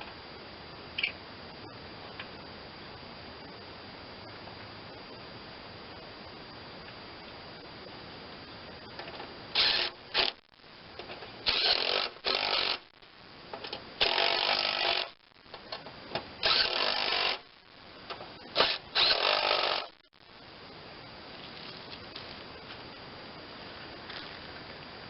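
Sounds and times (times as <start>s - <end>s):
power drill bursts: 9.6s - 10.4s, 11.4s - 12.9s, 14.0s - 15.2s, 16.4s - 17.5s, 18.6s - 20.0s.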